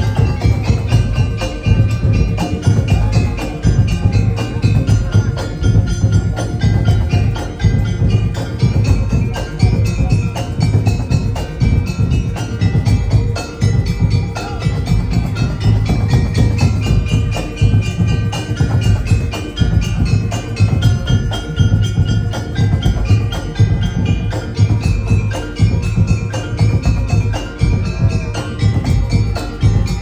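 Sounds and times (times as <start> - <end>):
drum steady beat: 0.0 - 30.0
gamelan ensemble music: 0.0 - 30.0.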